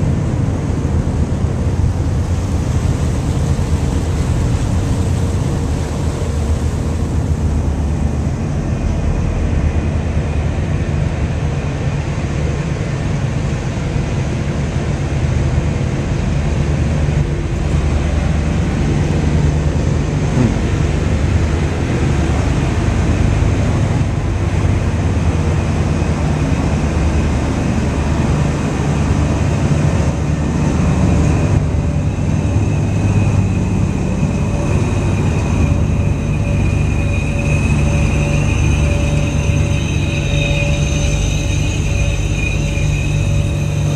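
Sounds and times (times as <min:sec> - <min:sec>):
ferry engines droning: 0:00.0 - 0:43.9.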